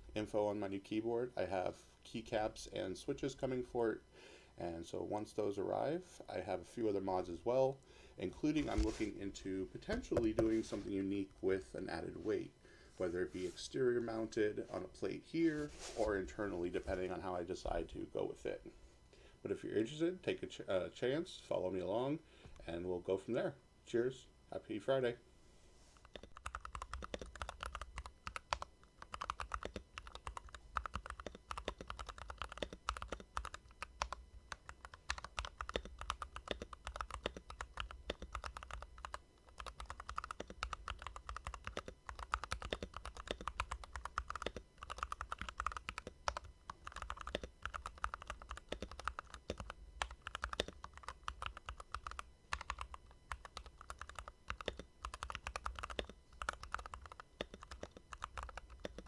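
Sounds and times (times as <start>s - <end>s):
mechanical keyboard typing: 26.1s - 59.0s.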